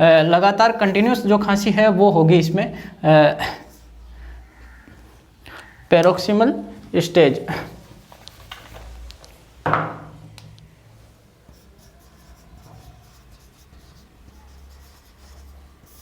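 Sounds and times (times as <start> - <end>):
pen scratching while writing: 11.5 - 16.0.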